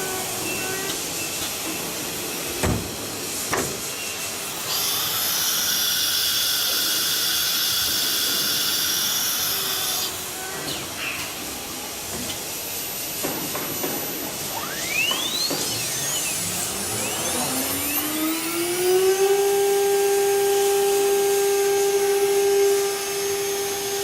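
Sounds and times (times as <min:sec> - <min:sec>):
air hiss: 0:00.0 - 0:16.6
router high-pitched whine: 0:03.8 - 0:24.0.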